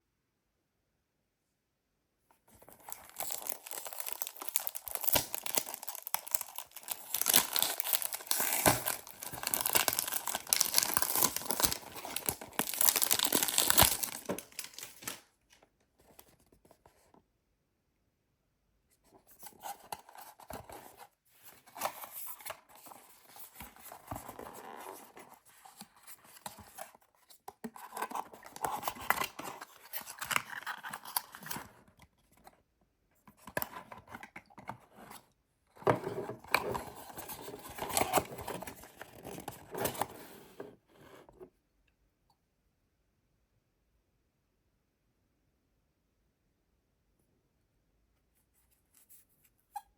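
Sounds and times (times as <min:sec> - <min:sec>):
box handling: 0:02.6 - 0:15.2, 0:35.8 - 0:41.4
plastic wrapping crinkling: 0:02.8 - 0:15.3.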